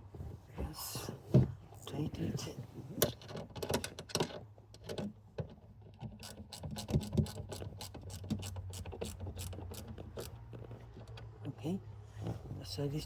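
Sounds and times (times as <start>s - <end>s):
ratchet clicking: 6.1s - 10.4s.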